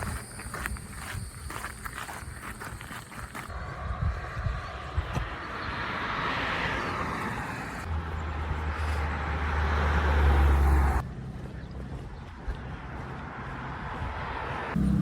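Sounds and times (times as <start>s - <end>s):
wind rumbling on microphone: 0.0s - 9.0s.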